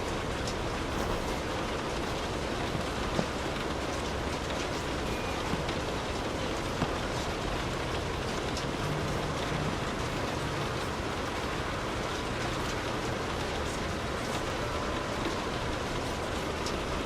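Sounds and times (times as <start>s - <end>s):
rain pattering on car roof: 0.0s - 17.0s.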